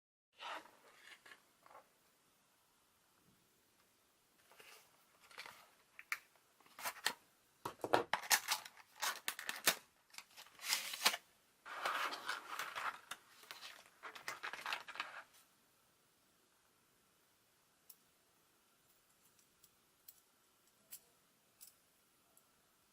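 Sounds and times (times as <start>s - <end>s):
packaging rustling and tearing: 8.1s - 15.3s.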